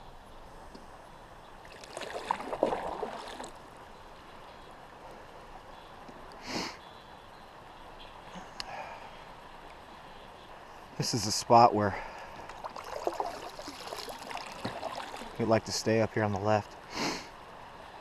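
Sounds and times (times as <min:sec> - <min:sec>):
swish of water: 0:01.6 - 0:03.6, 0:12.5 - 0:15.5
kayak paddle splashing: 0:01.6 - 0:03.9, 0:12.4 - 0:15.5
faint rush of current: 0:08.7 - 0:18.0.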